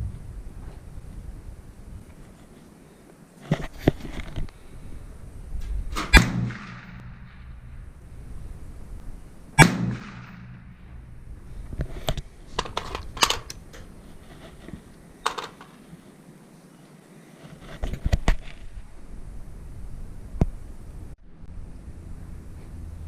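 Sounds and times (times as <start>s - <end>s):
suppressed rifle shot: 5.9s - 7.8s, 9.6s - 11.1s
sharp clicks and knocks: 15.2s - 15.8s.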